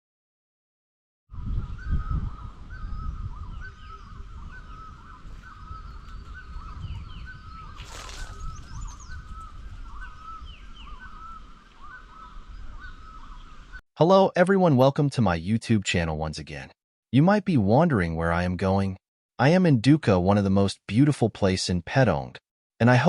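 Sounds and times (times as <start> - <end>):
wind rumble on microphone: 1.3 - 13.8
birds chirping in chorus: 1.4 - 13.8.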